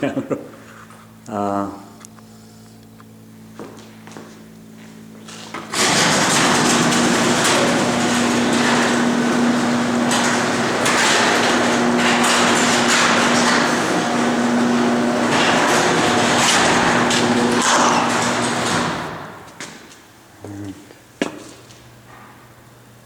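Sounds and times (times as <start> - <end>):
garage door opener running: 5.2 - 20.0.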